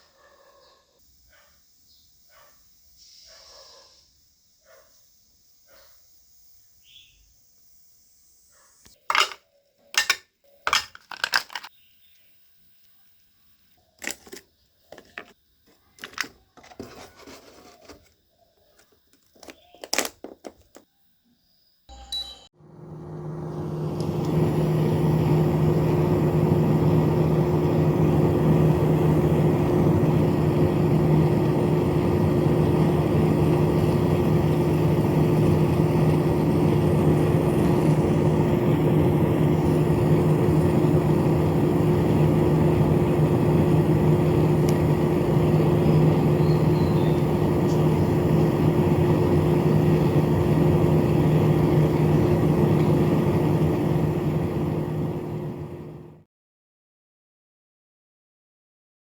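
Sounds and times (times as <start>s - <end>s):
electric fan motor humming: 21.9s - 56.2s.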